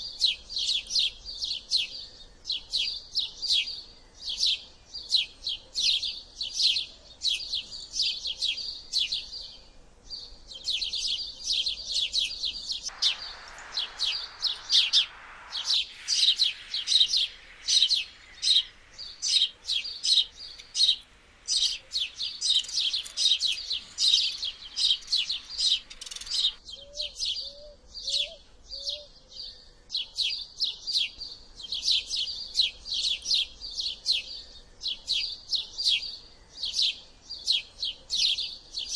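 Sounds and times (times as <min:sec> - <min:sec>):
sparrow chirping: 0:00.0 - 0:38.9.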